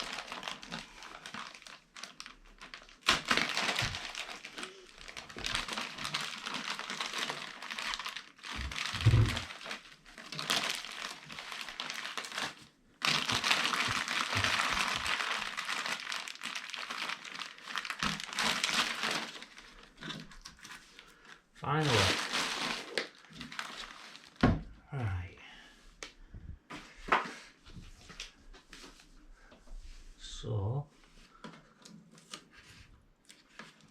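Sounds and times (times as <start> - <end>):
plastic packaging crinkling: 0.0 - 24.5.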